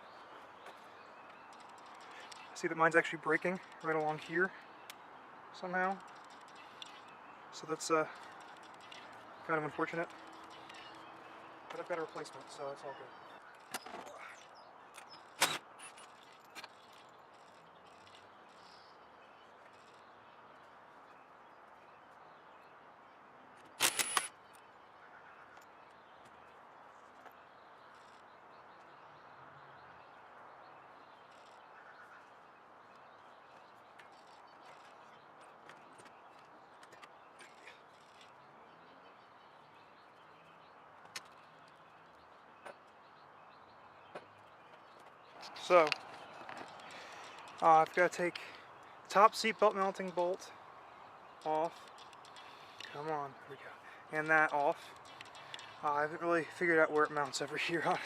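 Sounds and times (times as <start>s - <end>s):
faint birdsong: 0.0s - 58.0s
sharp clicks: 23.6s - 24.7s, 51.4s - 53.0s, 54.3s - 55.8s.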